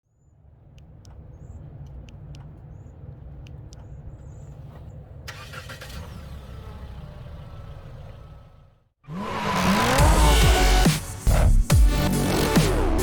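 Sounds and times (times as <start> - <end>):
car engine idling: 0.4 - 9.0.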